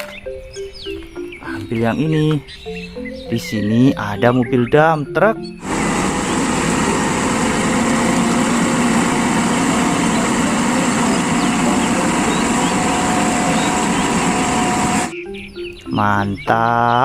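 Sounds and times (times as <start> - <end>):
truck engine running: 5.6 - 15.1.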